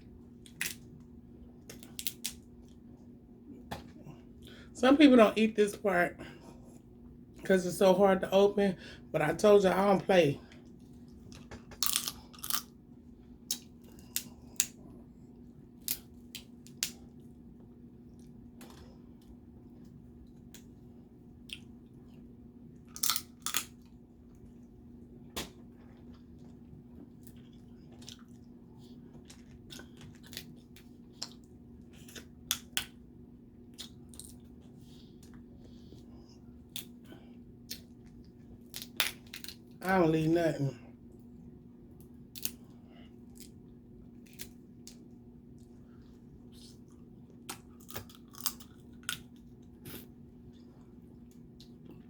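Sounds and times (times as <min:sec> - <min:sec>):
steady low hum: 0:00.0 - 0:52.0
crab shell cracking: 0:01.7 - 0:02.4, 0:11.7 - 0:12.7, 0:22.9 - 0:23.8, 0:42.3 - 0:42.6, 0:47.5 - 0:49.4
person eating: 0:10.6 - 0:12.8, 0:25.8 - 0:32.8, 0:45.5 - 0:52.0.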